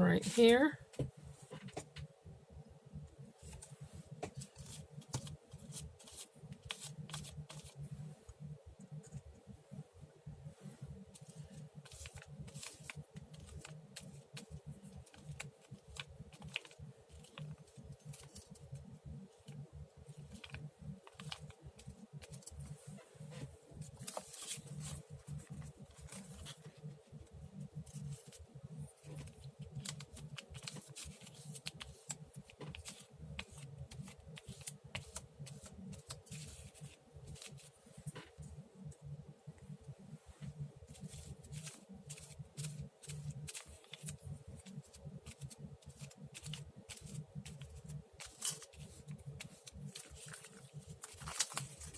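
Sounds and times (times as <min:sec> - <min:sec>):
faint steady hum: 0:00.0 - 0:51.9
paper rustling and crinkling: 0:03.4 - 0:07.8, 0:11.1 - 0:18.6, 0:20.2 - 0:28.4, 0:29.0 - 0:38.4, 0:40.4 - 0:51.9.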